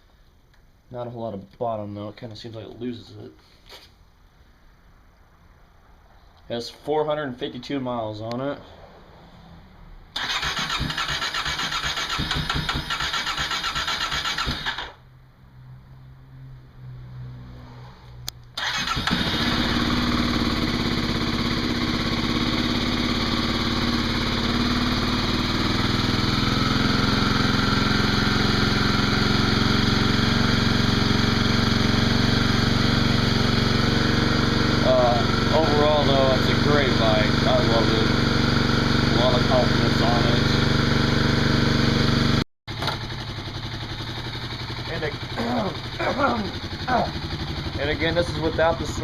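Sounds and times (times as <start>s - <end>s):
electric starter cranking: 10.2s - 15.0s, 18.6s - 20.3s
motorcycle engine idling: 18.6s - 49.0s.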